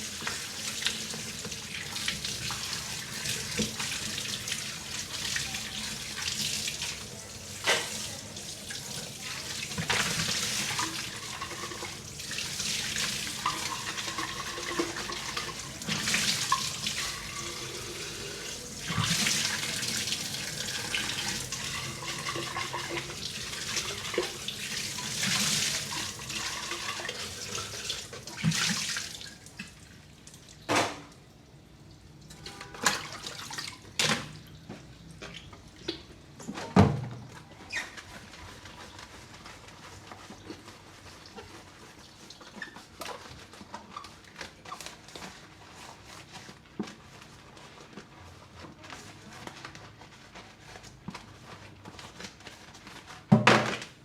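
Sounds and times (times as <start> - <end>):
kitchen tap running into sink: 0.0 - 31.2, 32.3 - 34.5.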